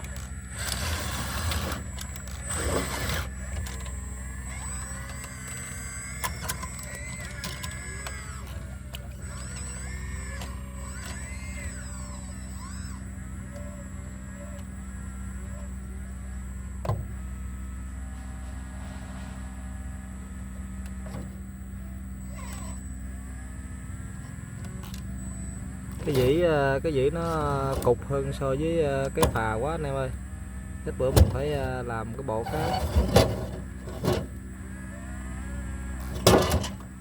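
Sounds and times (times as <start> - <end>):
excavator diesel engine running: 0.0 - 37.0
hydraulic whining: 0.0 - 37.0
metallic clunk: 36.1 - 36.9.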